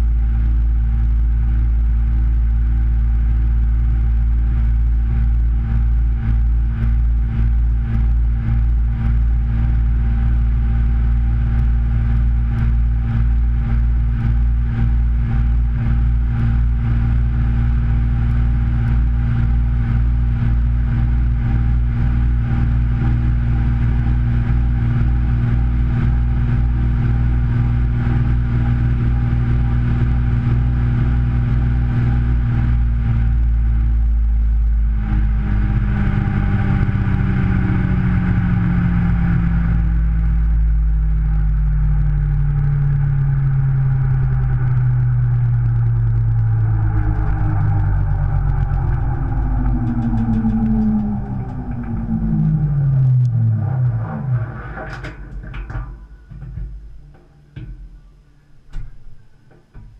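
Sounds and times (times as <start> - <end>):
washing machine motor hum: 44.4 - 57.8.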